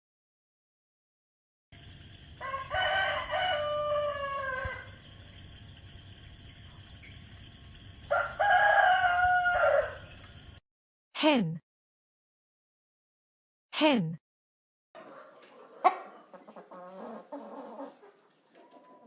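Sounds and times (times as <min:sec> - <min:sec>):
rooster crowing: 0:02.3 - 0:05.2, 0:08.0 - 0:10.3, 0:15.0 - 0:19.0.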